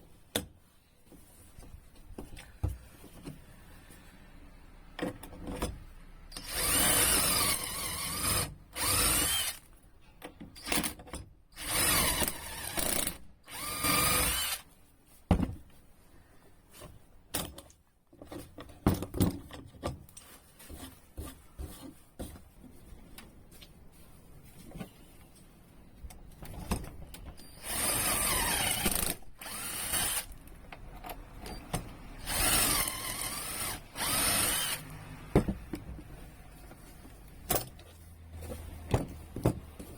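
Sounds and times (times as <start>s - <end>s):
power drill running: 6.4s - 9.6s, 11.6s - 14.6s, 27.6s - 30.4s, 32.2s - 34.9s.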